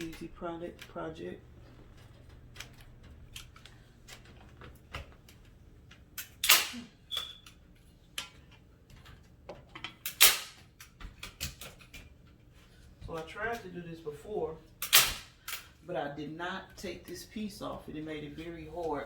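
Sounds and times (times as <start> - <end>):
staple gun snaps: 6.2 - 6.8, 10.1 - 10.6, 14.8 - 15.2.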